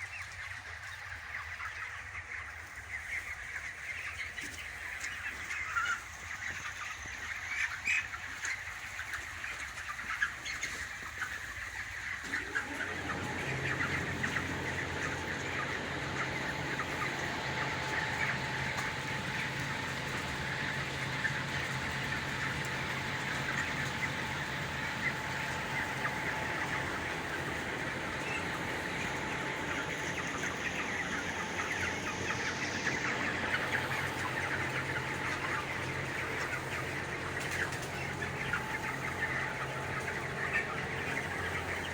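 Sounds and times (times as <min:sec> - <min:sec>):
chicks peeping and chickens clucking: 0:00.0 - 0:41.9
low machine hum: 0:11.5 - 0:41.9.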